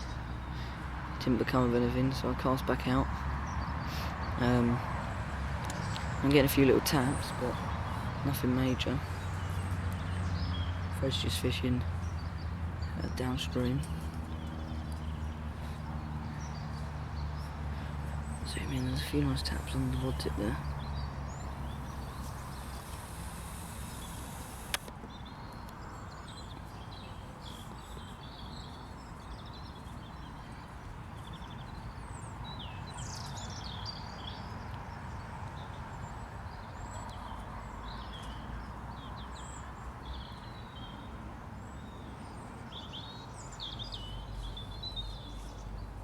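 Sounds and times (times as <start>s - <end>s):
outdoor background rush: 0.0s - 46.0s
small birds chirping: 0.0s - 46.0s
sharp click: 21.8s - 25.0s.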